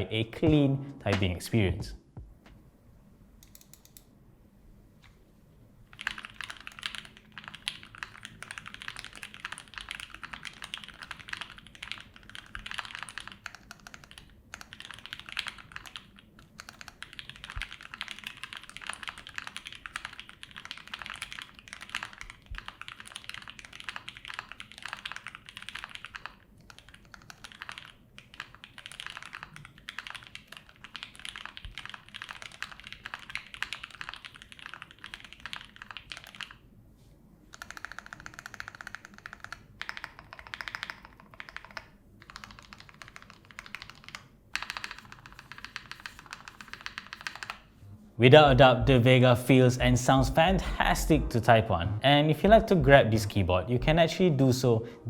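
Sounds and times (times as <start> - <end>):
fast typing on mechanical keyboard: 5.9 - 36.6, 37.5 - 47.7.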